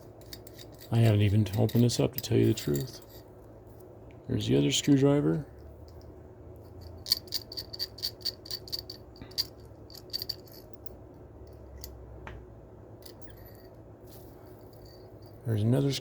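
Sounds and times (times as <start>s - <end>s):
screwdrivers clinking: 0.2s - 3.2s, 6.8s - 12.0s.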